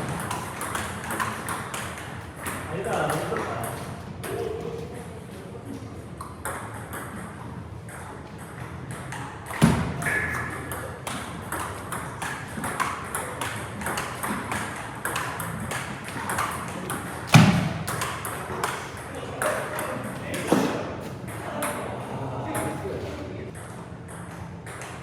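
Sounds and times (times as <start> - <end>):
table tennis balls clicking: 0.0 - 4.4, 6.2 - 20.2.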